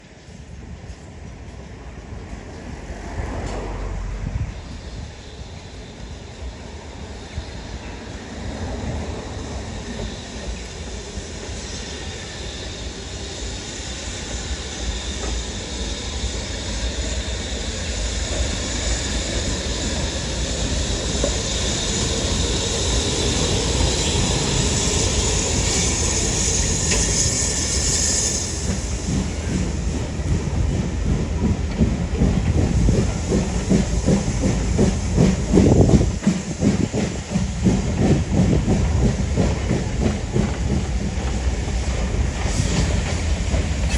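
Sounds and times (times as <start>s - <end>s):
train hiss: 0.0s - 43.9s
train wheels clattering over rail joints: 20.6s - 43.9s.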